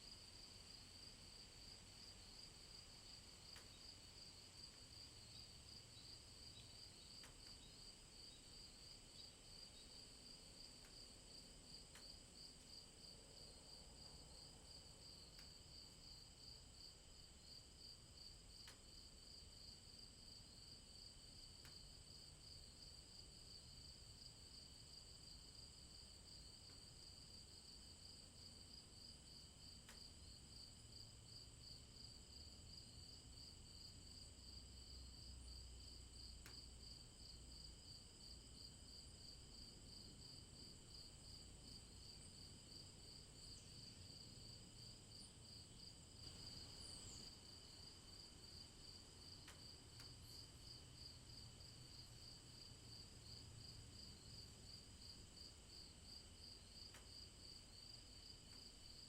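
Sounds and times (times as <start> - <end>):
faint ticks: 3.5 - 3.8, 6.6 - 7.9, 10.6 - 12.2, 15.1 - 15.7, 18.5 - 19.1, 21.4 - 22.0, 29.7 - 30.2, 35.3 - 37.7, 48.6 - 52.3, 56.8 - 59.0
insect trilling and buzzing: 46.2 - 48.6.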